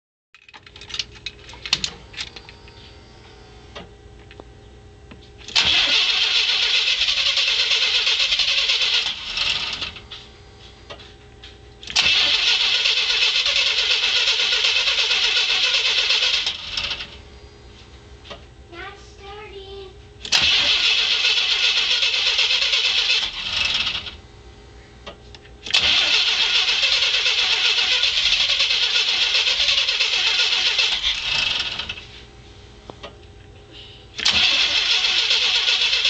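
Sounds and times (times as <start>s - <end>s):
car engine cranking on starter: 5.4s - 10.1s, 11.8s - 17.2s, 20.2s - 24.2s, 25.6s - 32.1s, 34.2s - 36.0s.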